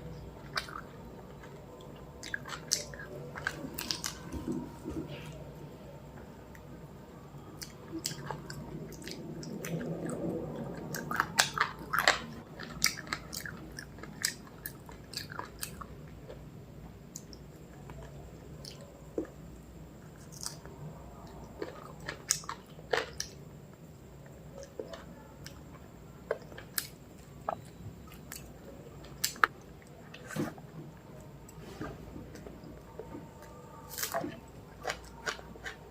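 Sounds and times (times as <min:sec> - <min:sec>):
person chewing crunchy food: 0:00.1 - 0:05.4, 0:07.5 - 0:16.5, 0:21.3 - 0:23.4, 0:24.6 - 0:35.9.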